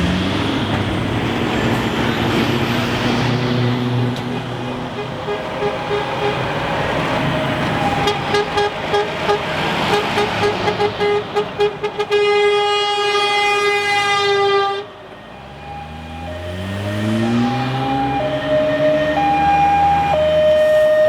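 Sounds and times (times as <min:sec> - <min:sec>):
passing truck engines: 0:00.0 - 0:21.0
truck horn honking: 0:04.3 - 0:06.6, 0:07.8 - 0:14.9.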